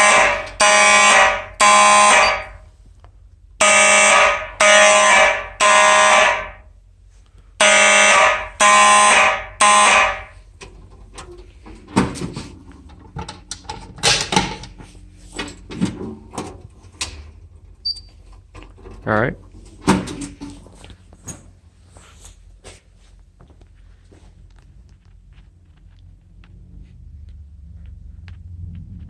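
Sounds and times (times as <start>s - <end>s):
buzzy fire alarm horns: 0.0s - 2.8s, 3.6s - 6.9s, 7.5s - 10.6s.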